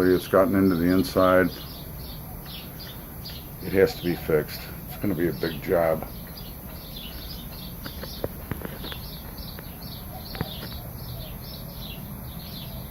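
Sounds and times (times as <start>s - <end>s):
bird chirping: 0.0s - 12.9s
sharp clicks near microphone: 7.5s - 10.9s.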